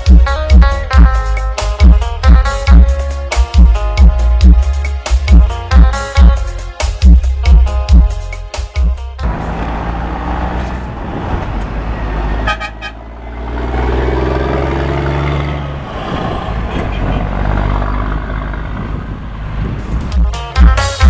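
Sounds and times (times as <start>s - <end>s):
truck diesel engine roar: 9.2s - 20.3s.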